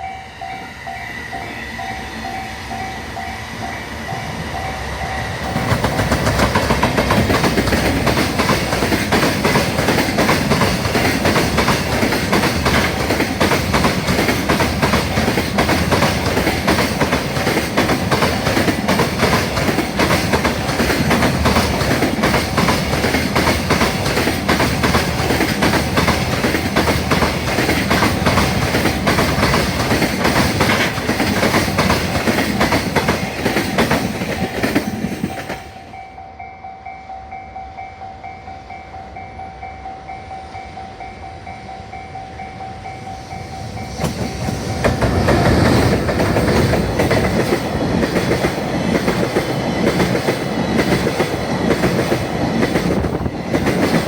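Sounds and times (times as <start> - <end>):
wheels clicking over rail joints: 5.4 - 35.6.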